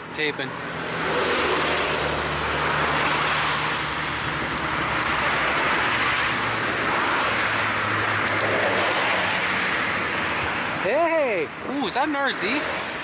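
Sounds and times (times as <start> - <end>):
road noise hiss: 0.0 - 13.0
traffic engine hum: 0.0 - 13.0.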